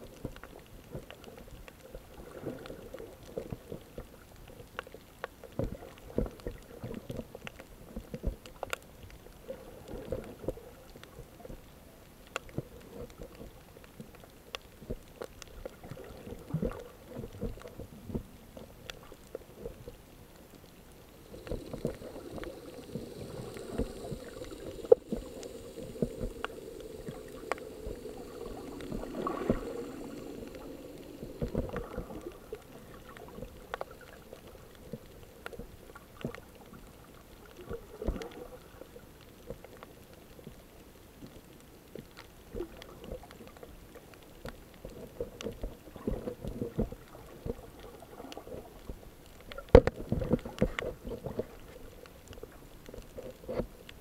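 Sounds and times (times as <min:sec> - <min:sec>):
muffled water with clicks and pops: 0:00.0 - 0:54.0
steady hum: 0:20.4 - 0:33.8.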